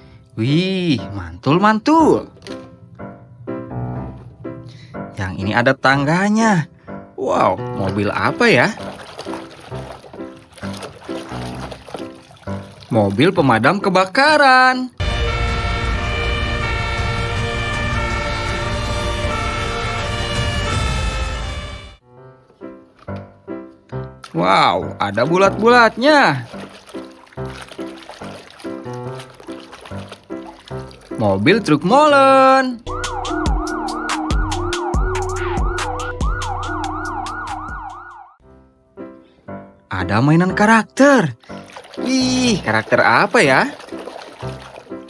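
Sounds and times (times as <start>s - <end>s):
fire engine siren: 15.0s - 22.0s, 32.9s - 38.4s
synthesized music with clicking beat: 32.9s - 38.1s.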